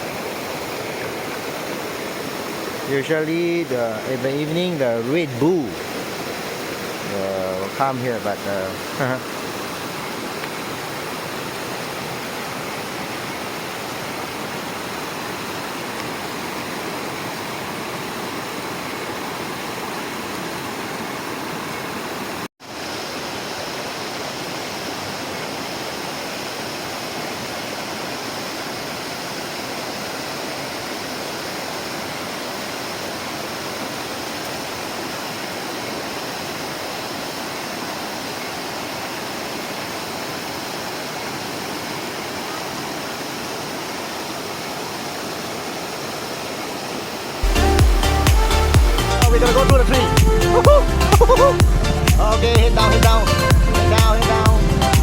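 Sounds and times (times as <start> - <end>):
flowing water rushing: 0.0 - 55.0.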